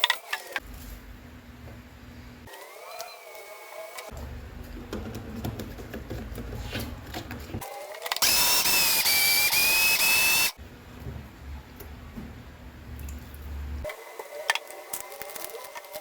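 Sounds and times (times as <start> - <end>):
blender motor whining: 8.2 - 10.6.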